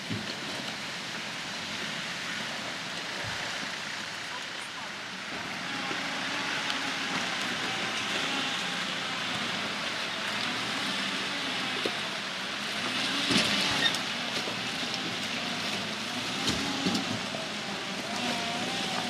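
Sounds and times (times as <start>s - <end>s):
vehicle engine running: 1.6s - 19.0s.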